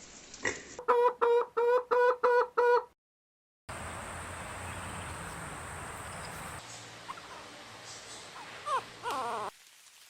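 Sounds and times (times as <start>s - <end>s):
background hiss: 3.7s - 10.0s
fowl calling rapidly: 8.4s - 9.6s.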